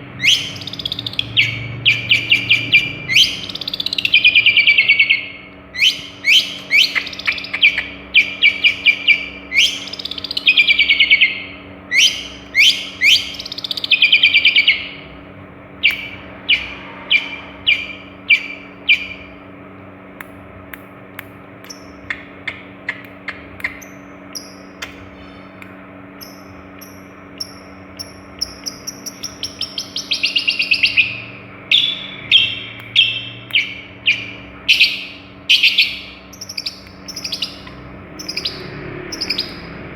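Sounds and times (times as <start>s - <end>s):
bird ticking notes: 0.0s - 15.0s, 15.8s - 19.5s, 21.2s - 39.9s
bird singing harsh calls: 0.0s - 15.2s, 15.8s - 19.6s, 21.7s - 39.9s
thin high whistles: 15.8s - 19.3s.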